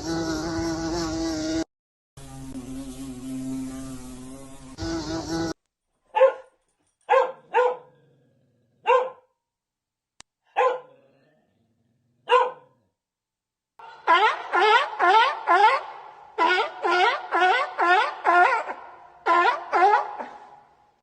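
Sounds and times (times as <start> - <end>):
buzzing: 0.0 - 5.6
dog barking: 6.1 - 7.9, 8.8 - 9.3, 10.5 - 11.0, 12.2 - 12.8, 17.0 - 20.6.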